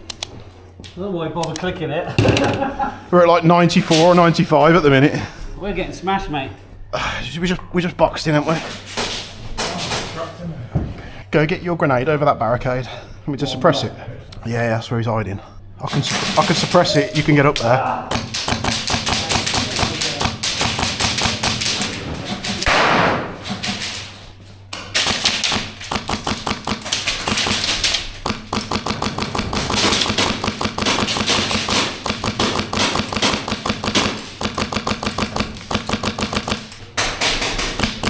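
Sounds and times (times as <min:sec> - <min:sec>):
airsoft rifle full-auto firing: 0:18.1 - 0:21.9, 0:24.9 - 0:36.8, 0:37.6 - 0:38.0.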